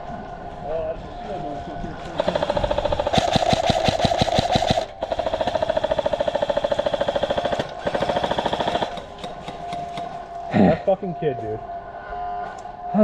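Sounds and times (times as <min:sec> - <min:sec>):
airsoft rifle firing full-auto: 0:02.2 - 0:10.3.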